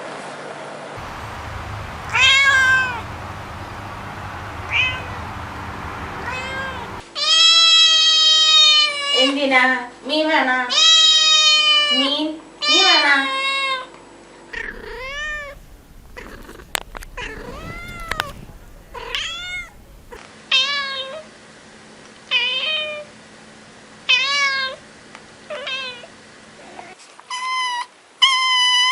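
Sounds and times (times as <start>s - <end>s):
kittens meowing: 1.1s - 7.0s, 14.6s - 20.2s.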